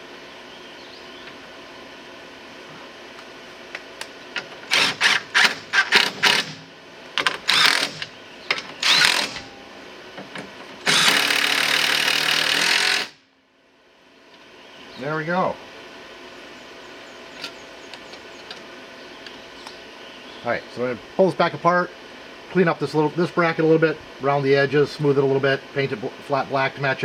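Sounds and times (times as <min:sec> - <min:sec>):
power driver whirring: 0:04.7 - 0:09.6, 0:10.8 - 0:13.2.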